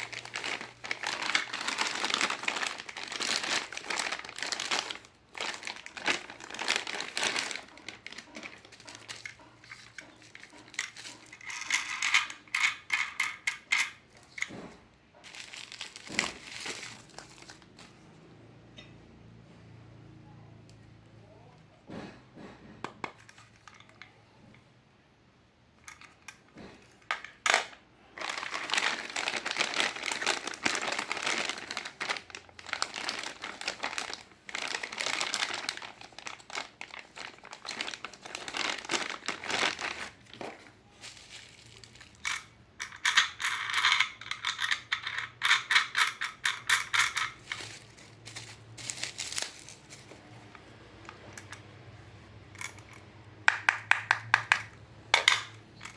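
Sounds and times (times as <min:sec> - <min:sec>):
plastic packaging crinkling: 0:00.0 - 0:12.3, 0:15.2 - 0:18.1, 0:27.0 - 0:53.6.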